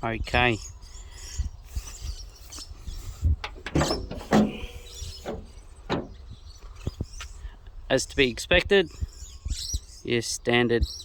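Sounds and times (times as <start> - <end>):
knocks and clicks: 3.4 - 6.2
short creak: 3.5 - 6.2.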